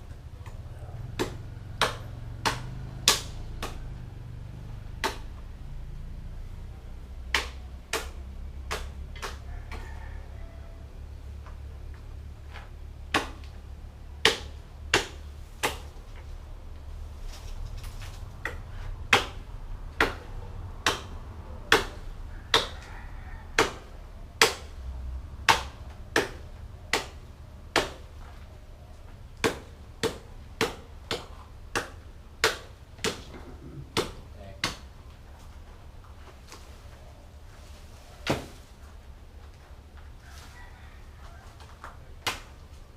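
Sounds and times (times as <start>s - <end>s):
blade chopping into wood: 0.5s - 3.8s, 5.0s - 5.4s, 7.3s - 9.8s, 13.1s - 13.6s, 14.2s - 15.9s, 18.4s - 19.4s, 20.0s - 22.8s, 23.6s - 24.7s, 25.4s - 28.1s, 29.4s - 34.9s.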